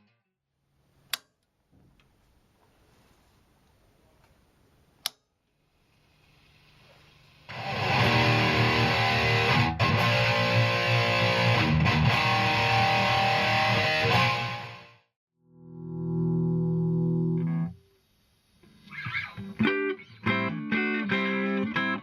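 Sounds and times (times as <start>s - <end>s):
distorted electric guitar riff: 7.5s - 17.8s, 18.7s - 22.0s.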